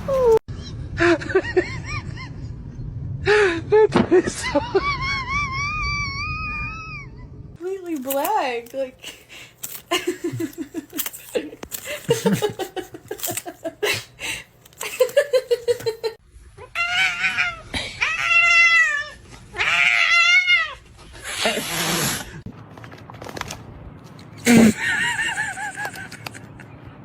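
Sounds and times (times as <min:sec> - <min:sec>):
cat yowling: 0:16.6 - 0:20.8.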